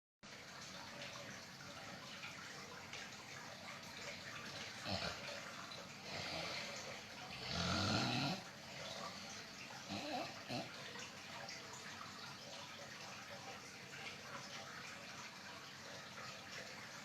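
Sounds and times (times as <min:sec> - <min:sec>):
person snoring: 0:04.8 - 0:05.4, 0:06.0 - 0:09.2, 0:09.8 - 0:10.7.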